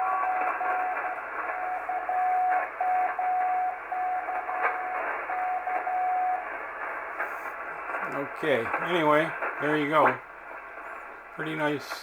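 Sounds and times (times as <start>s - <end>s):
morse code beeps: 0.0s - 6.5s
radio band hiss: 0.0s - 12.0s.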